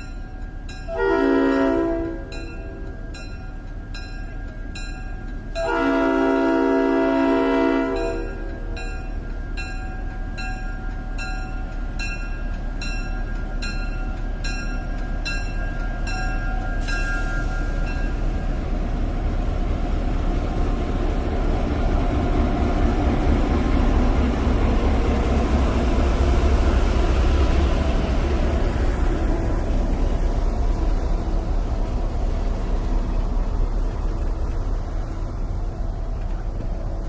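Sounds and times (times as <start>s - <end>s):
railroad crossing bell: 0.0s - 19.0s
diesel locomotive rumble: 0.0s - 37.0s
rail noise: 0.0s - 37.0s.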